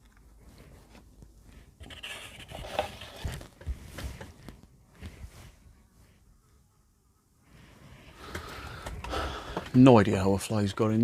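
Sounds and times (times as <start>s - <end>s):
rustling and rubbing: 0.2s - 6.7s.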